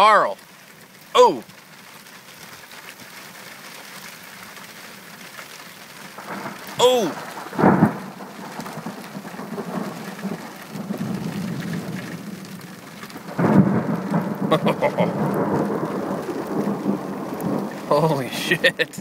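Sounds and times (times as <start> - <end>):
steady rain: 0.0 - 19.0
thunder cracking and rumbling: 6.2 - 19.0.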